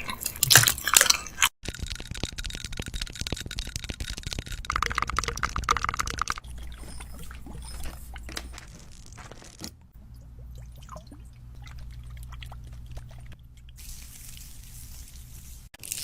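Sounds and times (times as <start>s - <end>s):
packaging crackling: 1.6s - 6.4s, 7.4s - 9.8s.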